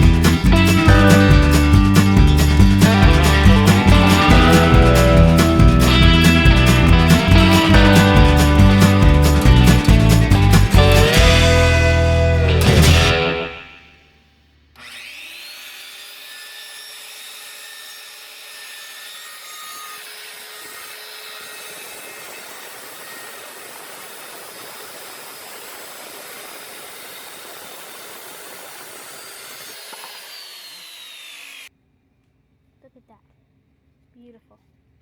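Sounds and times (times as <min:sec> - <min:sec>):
saw blade rasping through wood: 0:14.8 - 0:31.7
circular saw motor whine: 0:21.1 - 0:31.7.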